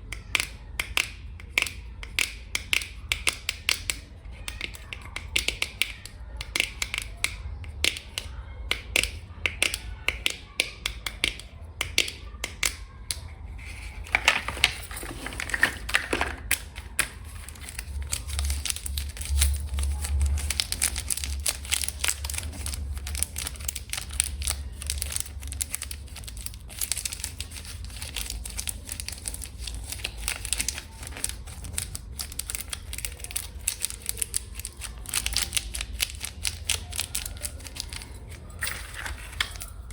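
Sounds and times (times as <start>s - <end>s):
fingernails tapping on packaging: 0.1s - 39.7s
crinkly scratching: 12.2s - 39.9s.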